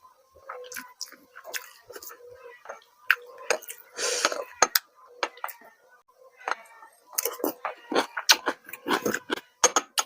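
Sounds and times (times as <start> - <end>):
person chewing with wet mouth sounds: 0.4 - 5.6, 6.4 - 10.0.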